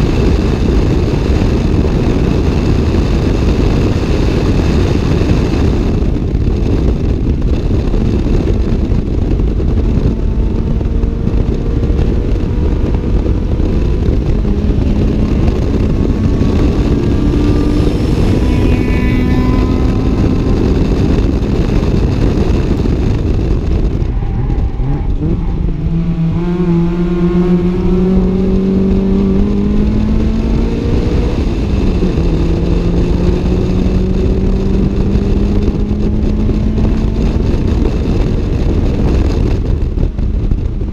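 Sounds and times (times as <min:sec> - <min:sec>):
car engine revving: 0:00.0 - 0:40.9
road noise: 0:00.0 - 0:40.9
wind noise: 0:00.0 - 0:40.9.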